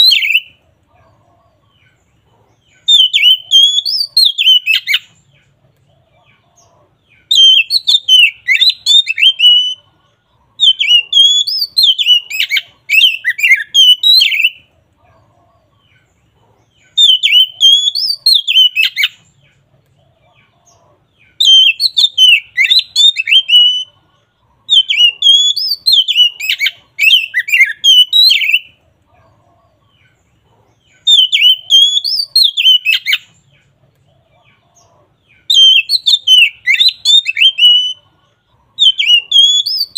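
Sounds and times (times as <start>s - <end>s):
bird singing with warbling whistles: 0.0s - 0.6s, 2.6s - 5.3s, 6.6s - 9.9s, 10.6s - 14.7s, 16.7s - 24.0s, 24.6s - 28.8s, 30.8s - 33.6s, 34.8s - 38.1s, 38.8s - 39.9s.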